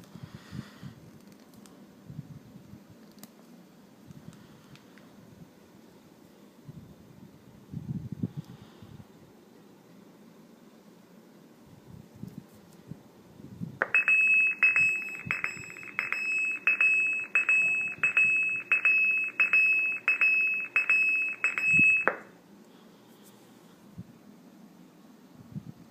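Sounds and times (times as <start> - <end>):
electronic warning bell ringing: 13.8 - 22.3.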